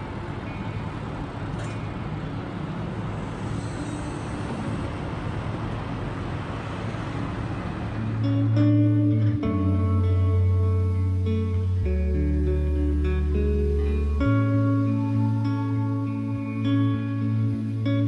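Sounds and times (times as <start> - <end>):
road traffic rushing: 0.0 - 18.0
plucked guitar music: 8.0 - 18.0.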